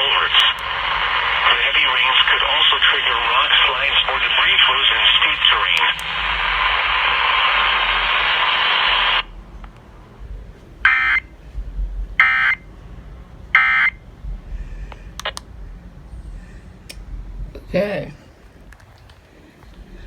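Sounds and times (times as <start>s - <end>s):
radio static hiss: 0.0s - 9.7s.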